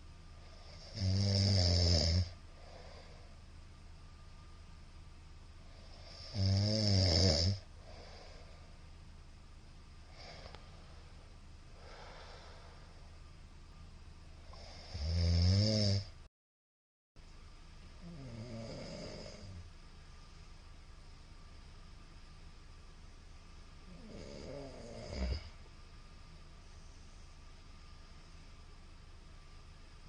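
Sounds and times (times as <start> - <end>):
man snoring: 0.6 - 2.4, 5.9 - 8.3, 14.5 - 16.2, 18.0 - 19.6, 23.9 - 25.6
soft breathing: 2.4 - 3.5, 7.6 - 9.0, 10.0 - 13.3, 26.5 - 28.8.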